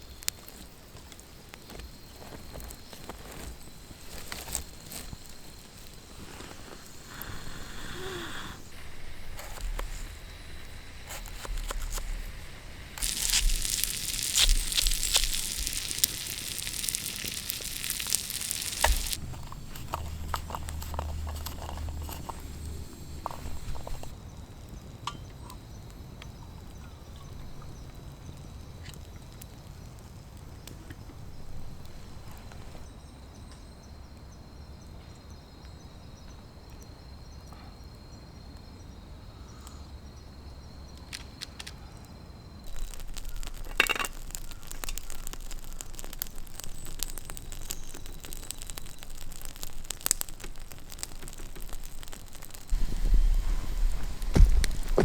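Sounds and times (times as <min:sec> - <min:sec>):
crackling and snapping: 0:00.0 - 0:24.2, 0:41.0 - 0:41.8, 0:42.6 - 0:55.0
high insect trill: 0:00.0 - 0:30.6, 0:38.0 - 0:55.0.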